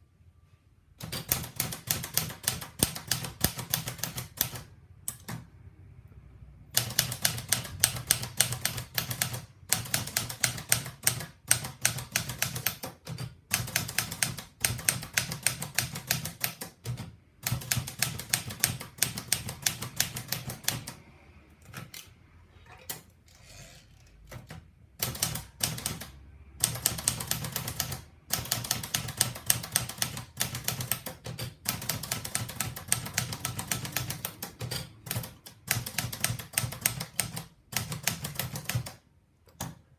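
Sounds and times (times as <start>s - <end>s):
manual typewriter key strikes: 1.0s - 5.4s, 6.7s - 21.0s.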